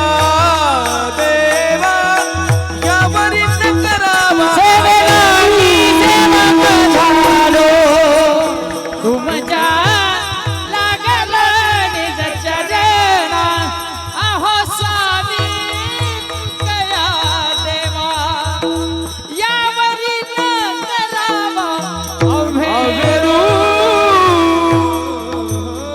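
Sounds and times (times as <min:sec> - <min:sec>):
held accompanying notes: 0:00.0 - 0:11.4
low rhythmic drum beat: 0:00.0 - 0:19.2
man singing ornamented melody: 0:00.0 - 0:25.9.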